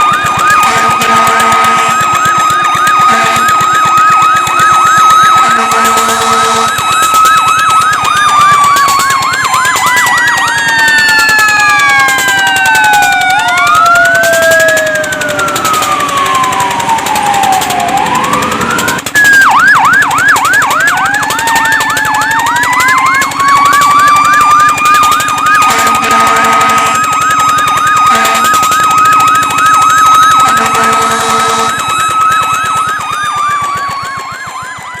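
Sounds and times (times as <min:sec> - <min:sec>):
fire truck sirens wailing: 0:00.0 - 0:35.0
horn sounding: 0:00.5 - 0:04.1, 0:05.0 - 0:07.0, 0:25.6 - 0:27.3, 0:27.9 - 0:32.2.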